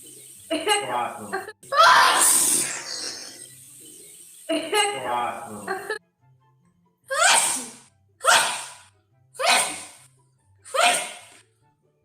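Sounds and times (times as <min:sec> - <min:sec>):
woman sneezing: 0:07.1 - 0:10.0, 0:10.7 - 0:11.3.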